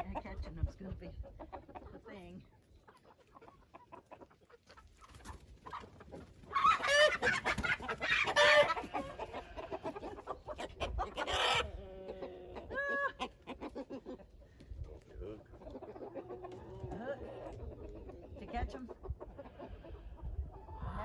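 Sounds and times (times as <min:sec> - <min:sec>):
hens squawking in alarm: 0:03.3 - 0:14.3, 0:15.4 - 0:21.0.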